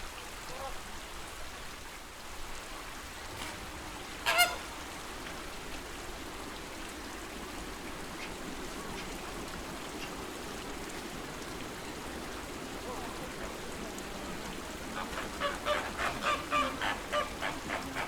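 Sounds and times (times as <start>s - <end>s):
lake water washing: 0.0s - 18.0s
flamingos honking: 3.2s - 5.9s, 12.6s - 18.0s.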